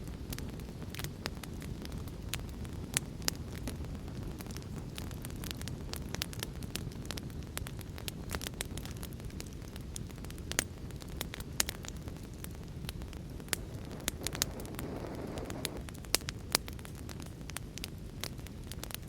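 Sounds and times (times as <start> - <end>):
low fire rumble: 0.0 - 19.0
sharp fire pops: 0.0 - 19.0
wood fire crackling: 0.0 - 19.0
soft hiss: 9.9 - 16.2.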